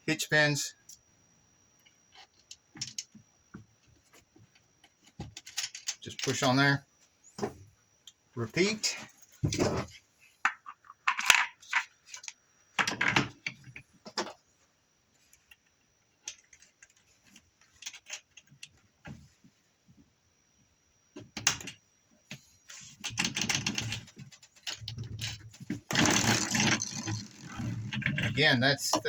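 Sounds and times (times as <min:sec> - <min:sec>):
metal parts clicking and rattling: 0:05.3 - 0:06.6, 0:22.8 - 0:28.4.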